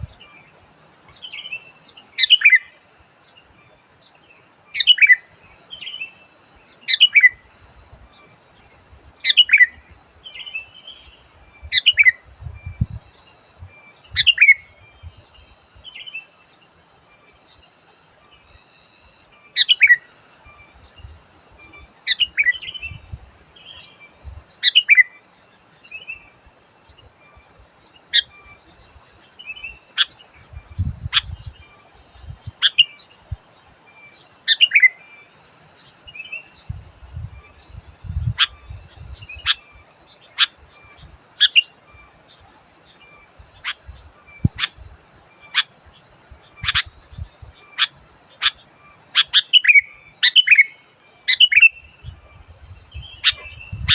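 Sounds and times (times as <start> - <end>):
bird whistled calls: 2.2 - 2.7, 4.8 - 6.2, 6.9 - 7.4, 14.1 - 15.0, 19.5 - 20.7, 34.5 - 35.1, 40.3 - 42.1, 47.6 - 52.2.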